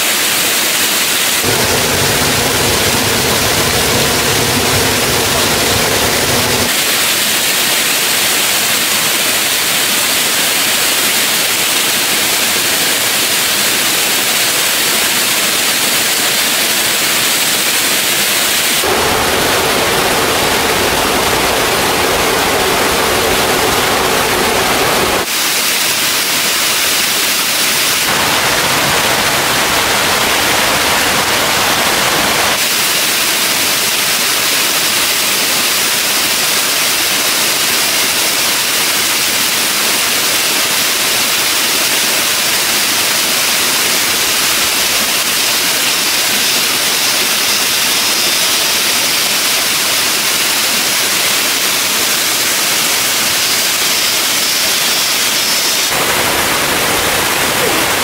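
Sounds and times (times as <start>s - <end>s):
rushing stream and waterfall: 0.0s - 58.0s.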